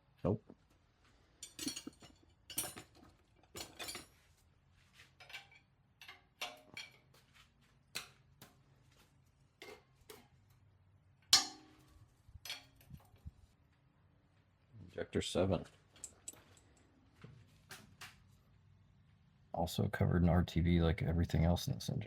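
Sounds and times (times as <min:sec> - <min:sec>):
metal tools clicking and clinking: 0:01.4 - 0:04.2, 0:05.2 - 0:07.1, 0:12.4 - 0:13.3, 0:15.9 - 0:16.9
metal clank: 0:11.4 - 0:11.8.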